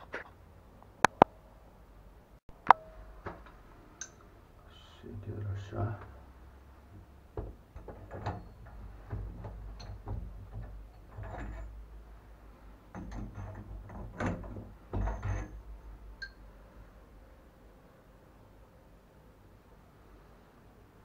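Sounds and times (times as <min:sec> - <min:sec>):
tools and metal parts clinking: 0:07.8 - 0:11.9, 0:12.9 - 0:16.4.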